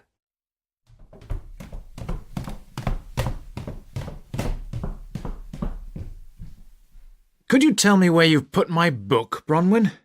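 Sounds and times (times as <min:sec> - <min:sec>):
thuds and knocks: 0:00.9 - 0:07.1.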